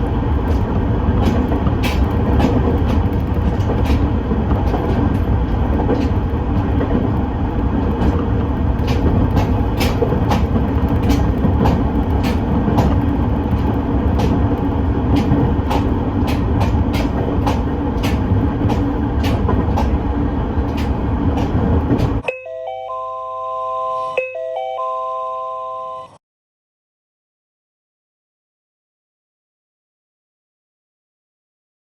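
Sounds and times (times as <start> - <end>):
train rumbling on rails: 0.0 - 22.2
wheels clicking over rail joints: 0.0 - 22.2
electronic chime: 22.2 - 26.2.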